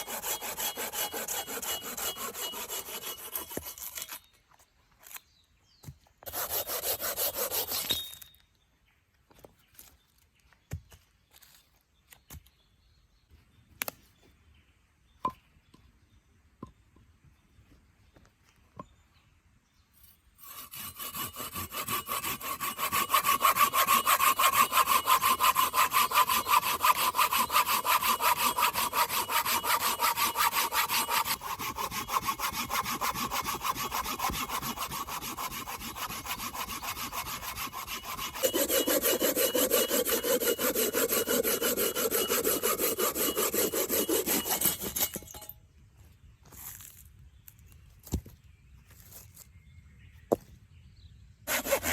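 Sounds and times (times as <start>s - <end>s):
hand saw cutting wood: 0.0s - 4.3s, 6.2s - 8.1s, 20.4s - 45.5s, 51.5s - 51.9s.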